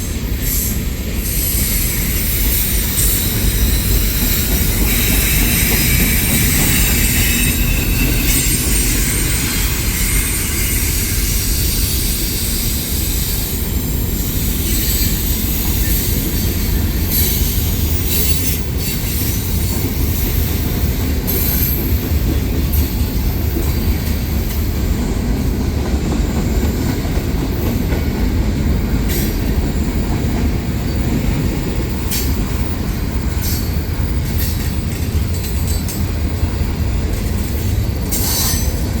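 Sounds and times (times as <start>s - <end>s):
sharp clacks of train wheels: 0.0s - 39.0s
train wheels rumbling on rail: 0.0s - 39.0s
high wheel squeal: 0.4s - 19.7s.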